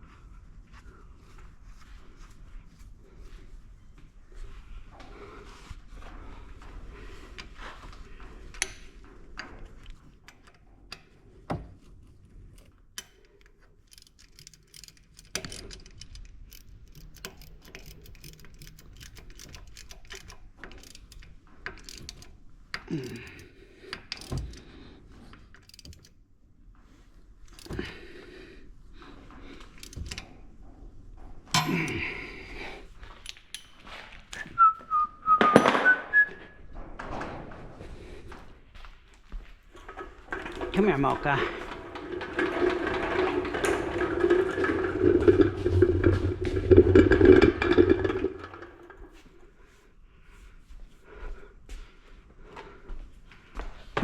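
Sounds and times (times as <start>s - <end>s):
metal tools clinking: 13.0s - 22.3s, 31.5s - 32.3s
person whistling: 34.4s - 36.6s.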